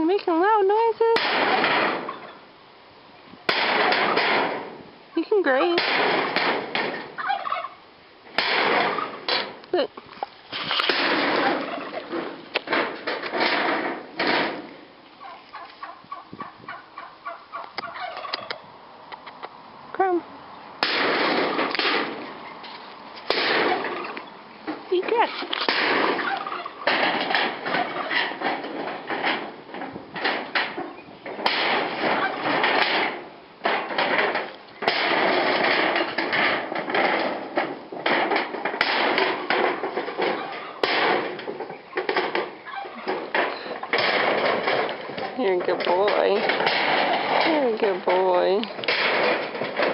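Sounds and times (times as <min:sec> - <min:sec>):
squeaky gobble-like sounds: 0:02.0 - 0:02.5, 0:07.2 - 0:07.9, 0:11.3 - 0:12.1, 0:15.2 - 0:19.6, 0:26.2 - 0:27.0, 0:27.7 - 0:28.4, 0:32.2 - 0:32.5, 0:40.2 - 0:40.9, 0:41.6 - 0:44.0
shed crunching: 0:03.5 - 0:18.2, 0:20.8 - 0:49.9
wood snapping and cracking: 0:08.4 - 0:14.8, 0:23.2 - 0:24.3, 0:25.5 - 0:49.9.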